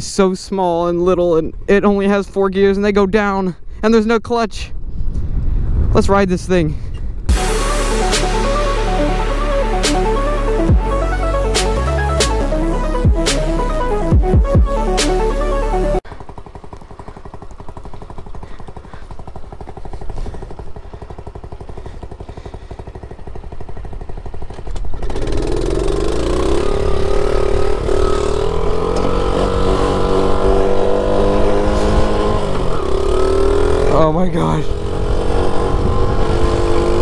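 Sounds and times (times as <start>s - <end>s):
small motorbike engine idling: 16.0s - 29.8s.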